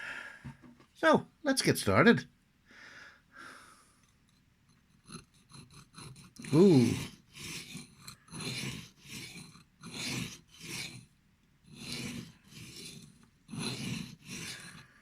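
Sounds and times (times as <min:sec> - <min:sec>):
knife blade rasping on whetstone: 0:05.0 - 0:11.1, 0:11.7 - 0:14.9.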